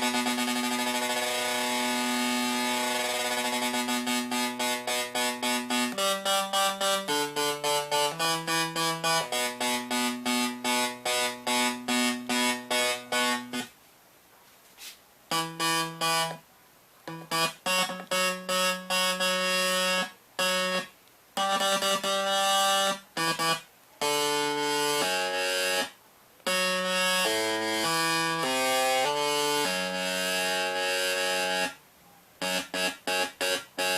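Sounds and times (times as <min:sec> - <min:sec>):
held electronic tones: 0:00.0 - 0:13.7, 0:15.3 - 0:16.4, 0:17.1 - 0:31.8, 0:32.4 - 0:33.9
repeated electronic beeps: 0:15.3 - 0:16.4, 0:17.1 - 0:25.9.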